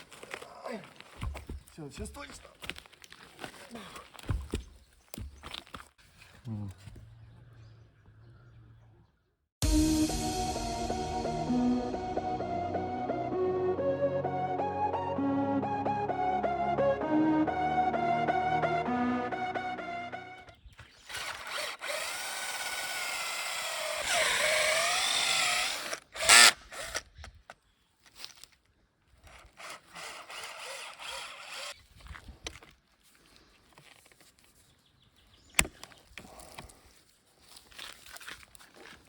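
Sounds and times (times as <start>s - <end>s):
chainsaw running at high revs: 21.1s - 27.0s, 29.6s - 31.7s.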